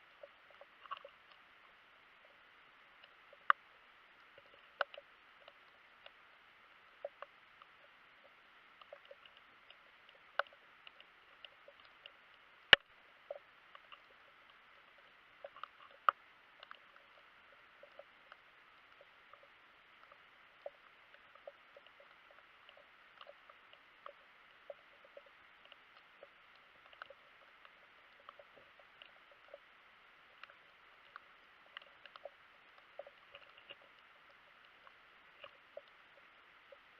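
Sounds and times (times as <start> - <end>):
faint underwater hiss: 0.0 - 36.9
clicks and pops: 12.6 - 14.2.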